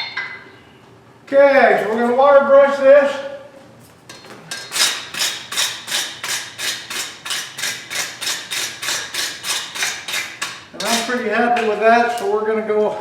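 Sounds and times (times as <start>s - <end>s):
wire brush scrubbing steel: 4.5s - 12.2s.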